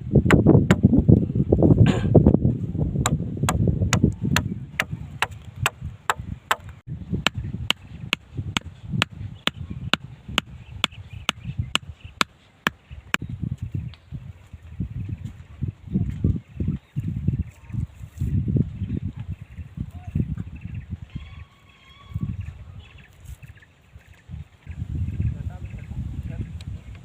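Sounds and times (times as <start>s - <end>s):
wind rumble on microphone: 0.0s - 27.0s
sharp chopping strikes: 0.3s - 0.9s.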